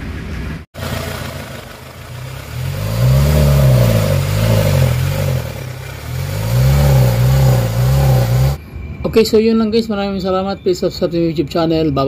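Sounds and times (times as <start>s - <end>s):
diesel engine revving: 0.1s - 8.6s.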